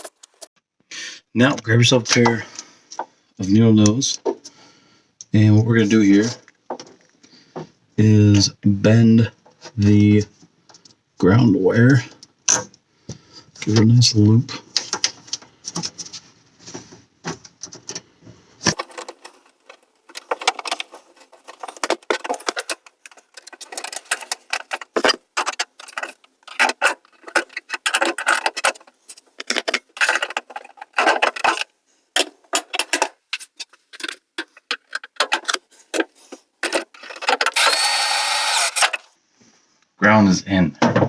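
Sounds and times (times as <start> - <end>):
pliers clicking and scraping on wire: 0.0 - 0.5, 18.7 - 31.7.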